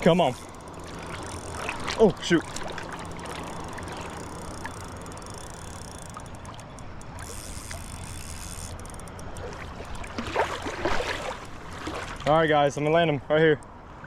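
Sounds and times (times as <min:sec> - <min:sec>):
creek water flowing: 0:00.0 - 0:14.0
faint clicks: 0:03.4 - 0:09.6.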